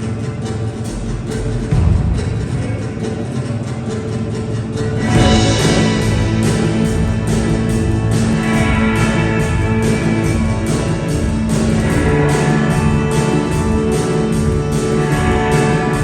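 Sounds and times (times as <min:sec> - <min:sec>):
guitar: 0:00.0 - 0:16.0
live band playing: 0:05.0 - 0:16.0.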